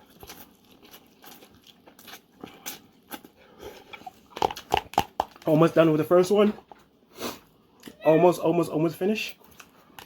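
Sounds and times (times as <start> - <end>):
wet chewing: 0.0 - 5.6.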